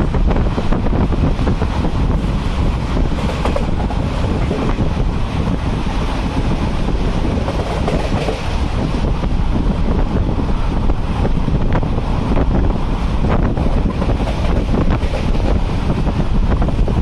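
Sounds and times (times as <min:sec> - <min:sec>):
moving train rumble: 0:00.0 - 0:17.0
wind on microphone: 0:00.0 - 0:17.0.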